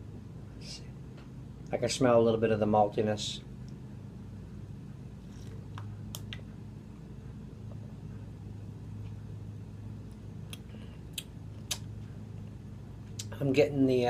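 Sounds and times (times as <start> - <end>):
low room hum: 0.0 - 14.0
mouth clicks and lip smacks: 10.4 - 11.9.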